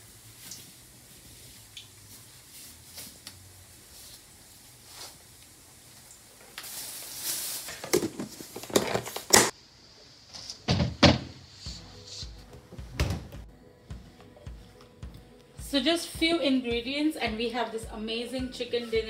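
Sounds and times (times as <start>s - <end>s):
sharp knocks and thuds: 12.6s - 15.2s.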